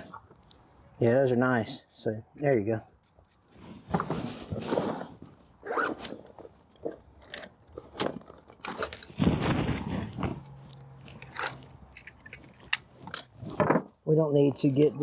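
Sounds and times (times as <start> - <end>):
handling noise on microphone: 3.0 - 14.0.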